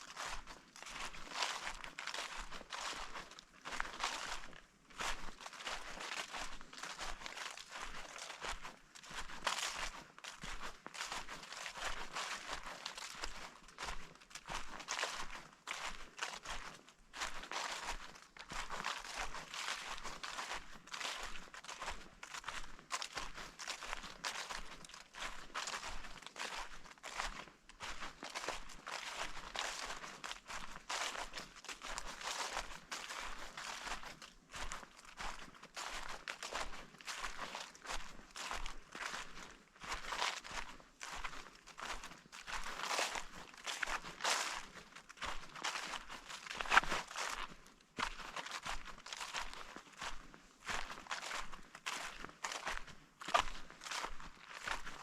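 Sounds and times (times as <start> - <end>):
footsteps crunching on forest floor: 0.0 - 55.0.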